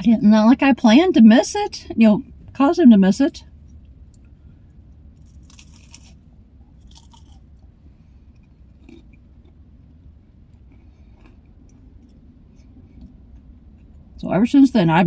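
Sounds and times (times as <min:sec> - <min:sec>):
soft chewing: 0:03.6 - 0:14.2
crackers crunching: 0:05.1 - 0:07.7, 0:08.3 - 0:09.7, 0:10.5 - 0:12.2.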